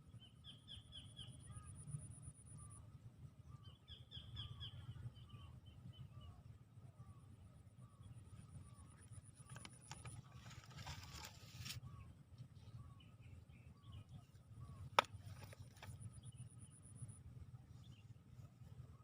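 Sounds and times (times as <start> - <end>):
faint bird chirps: 0.0 - 19.0
low steady rumble: 0.0 - 19.0
brief rustle: 9.4 - 11.8.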